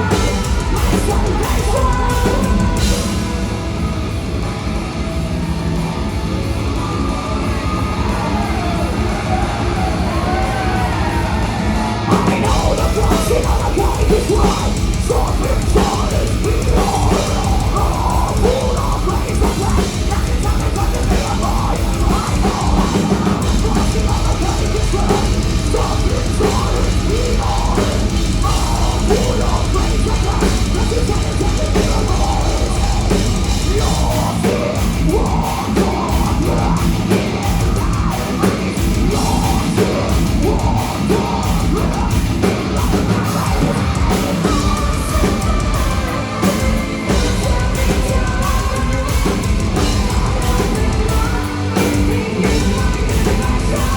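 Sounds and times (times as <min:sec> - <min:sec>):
heavy metal band playing: 0:00.0 - 0:53.9
pounding drum kit: 0:00.0 - 0:53.9.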